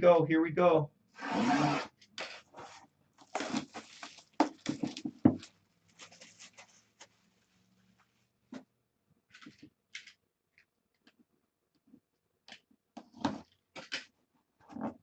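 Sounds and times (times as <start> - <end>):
packaging rustling and scraping: 2.2 - 7.6.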